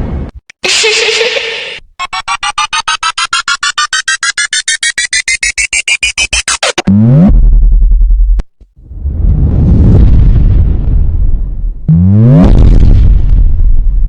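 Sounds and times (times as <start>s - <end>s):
pulsing synth tone rising: 2.0s - 8.2s
synth pitch sweep: 2.0s - 8.2s
deep bass tone: 4.6s - 14.0s.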